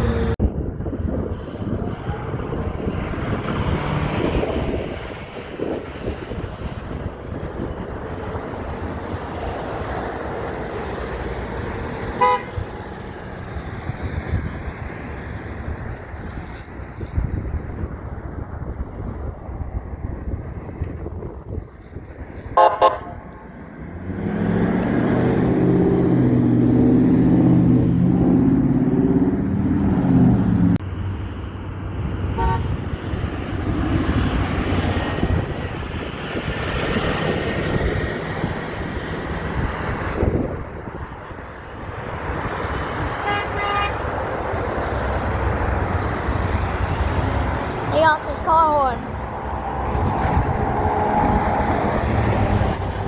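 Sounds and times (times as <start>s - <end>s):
passing traffic: 0.0s - 53.0s
car horn toots: 12.2s - 12.7s, 22.6s - 23.2s, 32.4s - 32.8s, 43.2s - 44.0s
truck air horn blowing: 12.2s - 12.7s, 22.6s - 23.3s, 32.4s - 32.8s, 43.2s - 44.1s.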